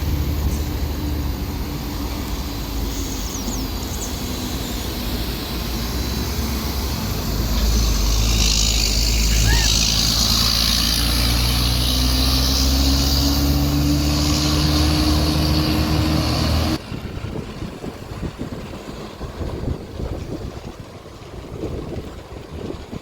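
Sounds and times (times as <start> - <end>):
diesel bus engine running: 0.0 - 23.0.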